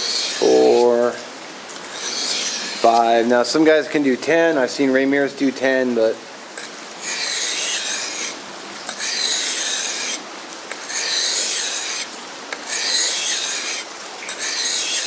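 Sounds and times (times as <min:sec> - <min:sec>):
knife scraping on sharpening stone: 0:00.0 - 0:00.8, 0:01.9 - 0:03.1, 0:06.6 - 0:15.0.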